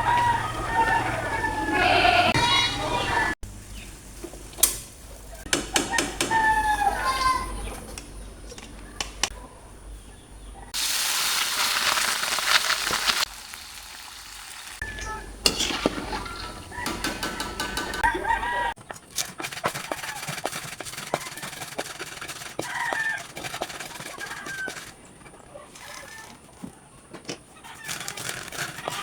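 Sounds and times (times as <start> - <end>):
chickens clucking: 0.0 - 4.0, 5.1 - 10.8, 14.8 - 29.0
utensils and pans clattering: 4.4 - 9.4, 14.8 - 26.6, 27.2 - 29.0
loud sizzling: 10.8 - 17.6.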